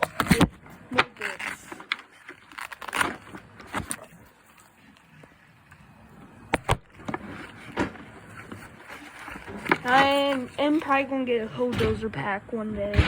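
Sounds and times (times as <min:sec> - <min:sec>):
toolbox handling noise: 0:00.0 - 0:04.7, 0:06.5 - 0:11.0.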